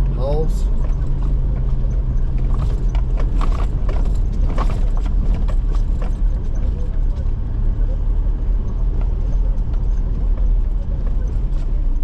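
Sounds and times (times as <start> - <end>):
car engine and road rumble: 0.0 - 12.0
knocks and rattles: 0.8 - 7.3.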